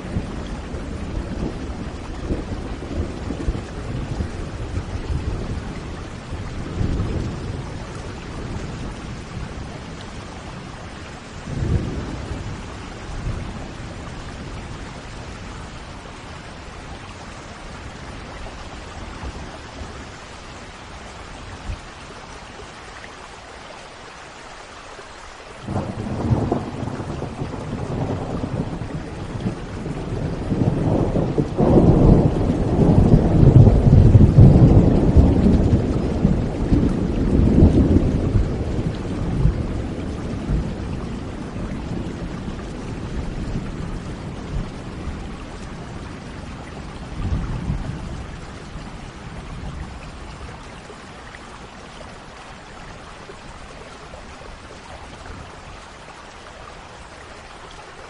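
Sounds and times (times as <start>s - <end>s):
rolling thunder: 0.0s - 15.6s, 25.6s - 50.7s
steady rain: 0.0s - 58.0s.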